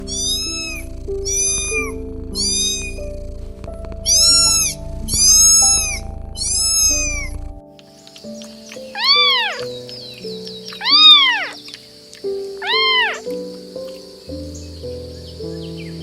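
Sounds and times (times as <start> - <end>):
cat meowing: 0.0 - 7.6, 9.0 - 9.7, 10.8 - 11.6, 12.6 - 13.3
background music: 0.0 - 16.0.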